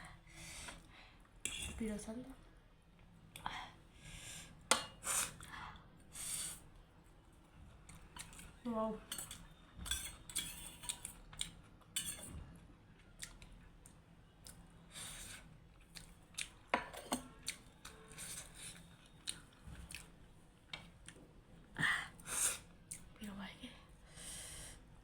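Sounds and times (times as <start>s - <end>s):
person chewing and smacking: 7.8s - 8.5s, 10.8s - 11.9s, 13.0s - 14.7s, 15.7s - 16.7s, 17.3s - 21.3s
cutlery clicking against a dish: 9.1s - 12.3s, 16.8s - 17.3s.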